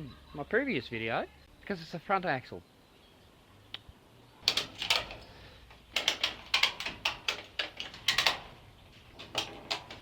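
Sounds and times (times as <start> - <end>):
sharp clicks and light knocks: 3.7 - 10.0.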